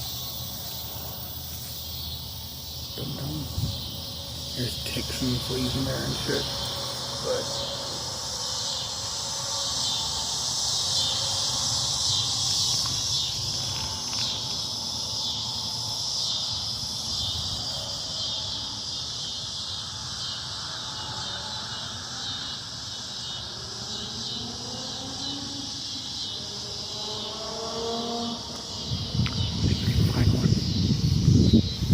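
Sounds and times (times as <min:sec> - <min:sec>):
cicadas buzzing: 0:00.0 - 0:31.9.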